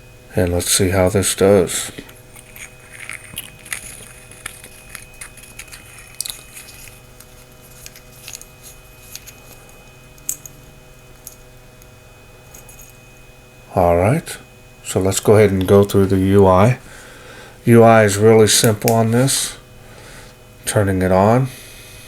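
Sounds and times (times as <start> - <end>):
faint steady hum: 0.0 - 22.0
flashlight clicks and scrapes: 2.1 - 10.5.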